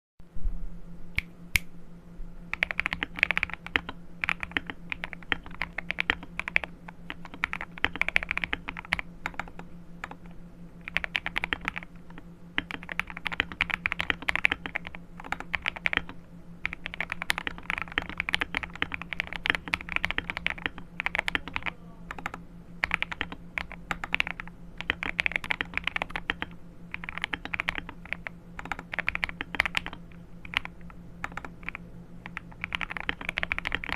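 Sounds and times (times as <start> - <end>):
steady low hum: 0.2 - 33.9
mechanical keyboard typing: 2.5 - 33.9.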